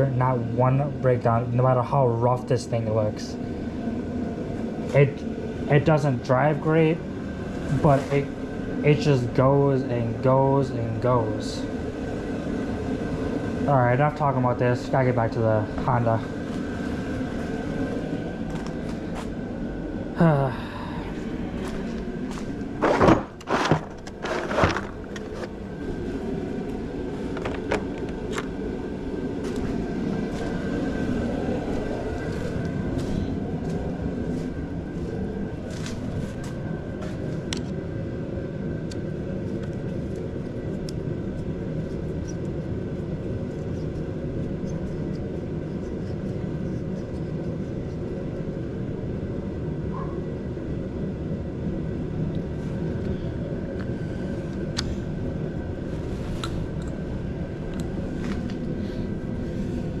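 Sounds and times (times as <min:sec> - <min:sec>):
faint steady whine: 0:00.0 - 1:00.0
steady low rumble: 0:00.0 - 1:00.0.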